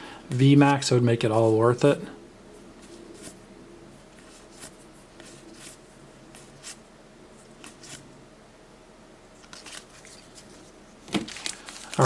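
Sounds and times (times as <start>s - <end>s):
trading cards tapping and rustling: 9.4s - 12.0s.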